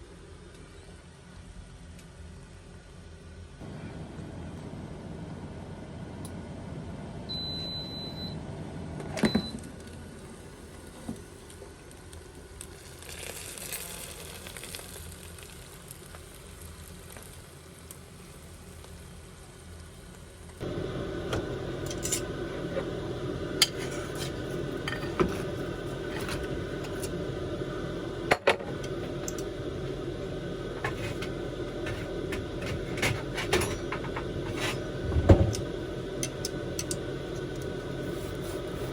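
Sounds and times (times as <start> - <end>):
steady background hum: 0.0 - 38.9
appliance beeping: 7.3 - 9.8, 20.6 - 38.9.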